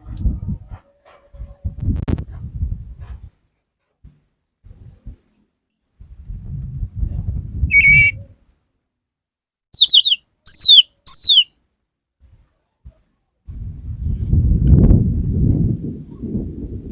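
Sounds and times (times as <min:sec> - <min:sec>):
songbird whistling: 0:07.7 - 0:08.2, 0:09.8 - 0:11.5.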